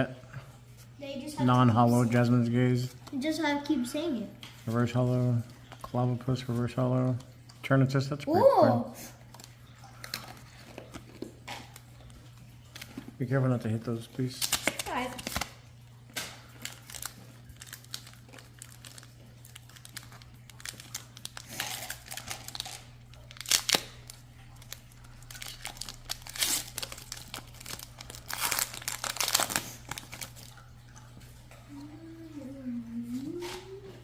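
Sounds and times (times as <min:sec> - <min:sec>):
foil wrappers tearing and crinkling: 0:14.2 - 0:30.6.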